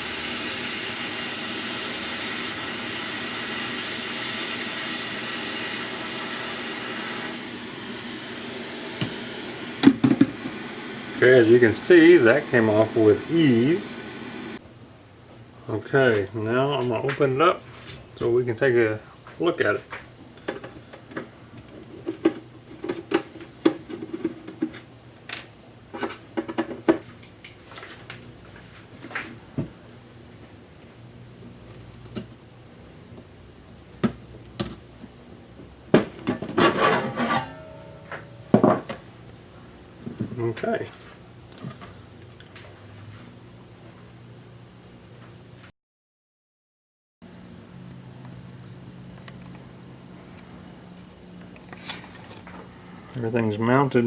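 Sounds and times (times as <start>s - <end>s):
hot air gun blowing: 0.0s - 14.6s
faint fan hum: 8.5s - 45.7s, 47.3s - 54.0s.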